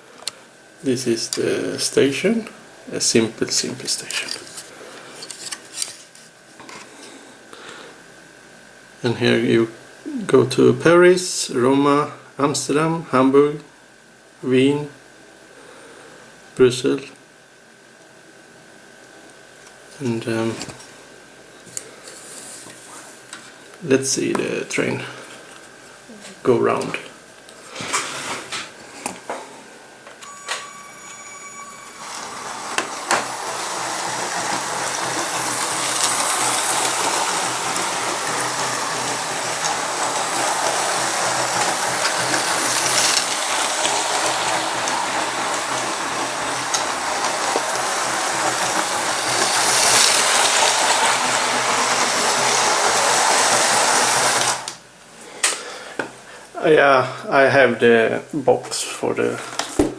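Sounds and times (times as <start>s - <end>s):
toy train motor whir: 3.0s - 6.8s, 30.8s - 54.8s.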